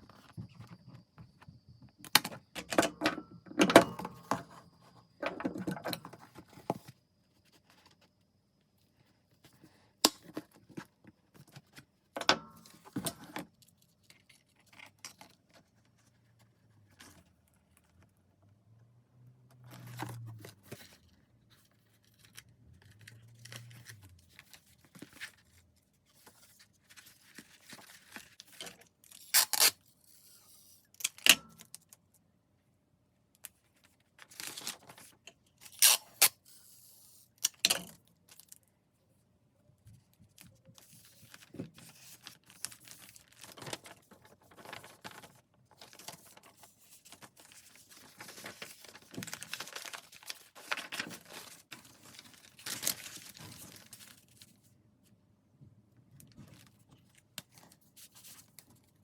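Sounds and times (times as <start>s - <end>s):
paper rustling and tearing: 40.8s - 54.6s.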